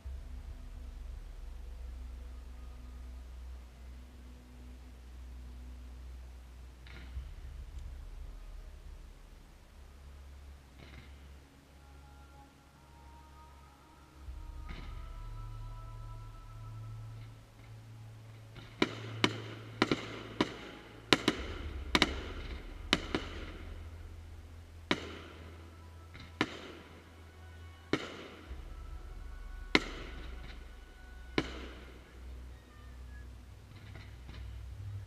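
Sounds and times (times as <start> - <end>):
music playing: 0.0 - 35.0
fireworks bursting: 18.5 - 25.6.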